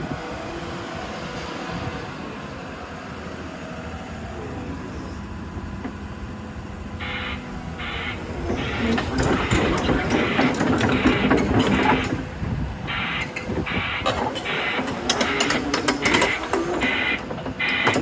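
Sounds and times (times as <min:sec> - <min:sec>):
excavator engine running: 0:00.0 - 0:18.0
clanking and knocking: 0:08.4 - 0:18.0.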